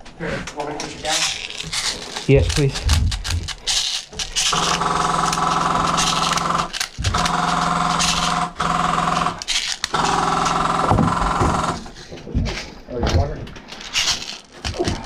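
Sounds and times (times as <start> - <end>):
small electric motor running: 2.1 - 11.9.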